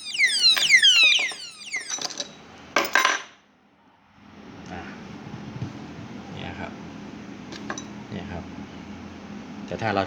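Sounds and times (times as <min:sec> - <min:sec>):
alarm siren sweeps: 0:00.0 - 0:02.5.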